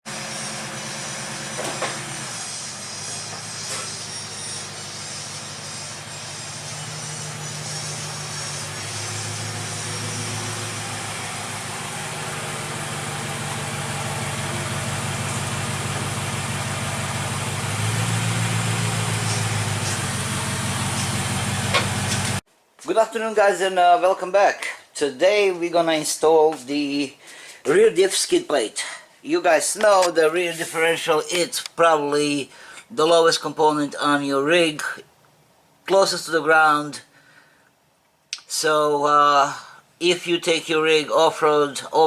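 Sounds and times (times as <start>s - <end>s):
road noise: 0.1s - 22.4s, 29.8s - 31.8s
vehicle engine drone: 0.1s - 22.4s.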